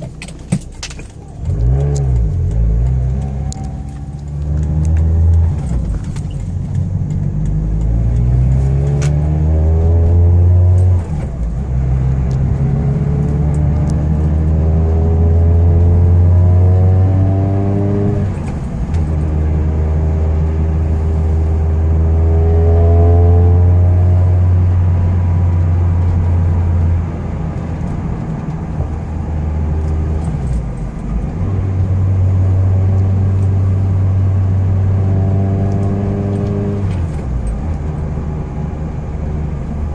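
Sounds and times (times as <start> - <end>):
car engine accelerating: 0.0 - 39.9.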